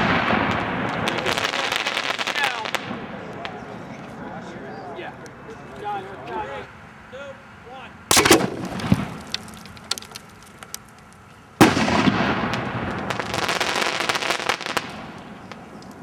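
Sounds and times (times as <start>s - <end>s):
firework crackling: 0.0s - 2.9s, 8.2s - 11.0s, 11.6s - 16.0s
firework mortar bang: 8.1s - 10.2s
firework shell bursting: 8.1s - 10.6s.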